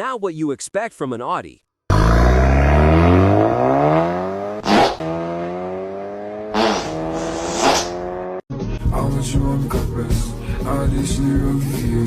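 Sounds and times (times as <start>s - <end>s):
car engine revving tone: 1.9s - 8.4s
brief rushes of noise: 6.6s - 8.0s.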